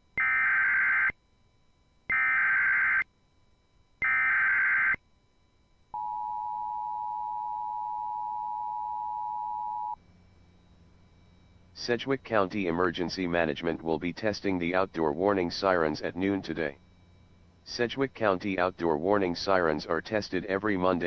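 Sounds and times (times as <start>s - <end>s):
two-tone attention signal: 6.0s - 10.0s
warbling data bursts: 11.7s - 21.0s.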